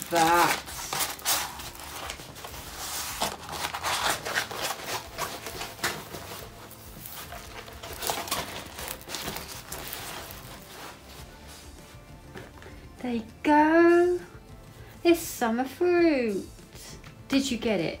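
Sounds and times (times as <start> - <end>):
plastic wrapping crinkling: 0.0 - 12.7.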